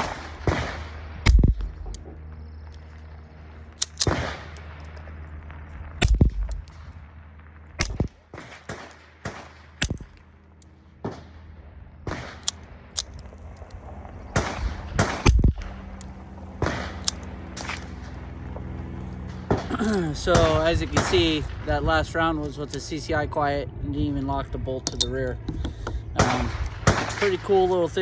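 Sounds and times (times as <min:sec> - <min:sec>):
gunshots: 0:00.0 - 0:02.0, 0:03.8 - 0:04.8, 0:05.9 - 0:06.9, 0:07.8 - 0:10.2, 0:12.0 - 0:13.2, 0:14.3 - 0:15.8, 0:16.6 - 0:17.8, 0:19.4 - 0:21.7, 0:26.2 - 0:27.6
quiet suppressed pistol shots: 0:06.0 - 0:06.8, 0:07.8 - 0:10.2.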